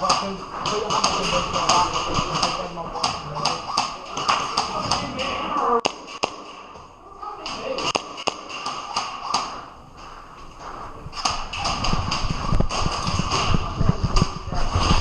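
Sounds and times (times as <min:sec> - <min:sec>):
airsoft guns firing: 0:00.0 - 0:06.8, 0:07.4 - 0:09.8.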